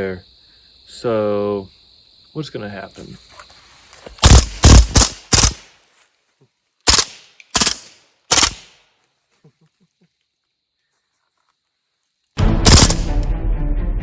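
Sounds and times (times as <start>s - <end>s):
air rifle shots: 4.2s - 5.7s, 6.9s - 8.8s, 12.6s - 13.3s.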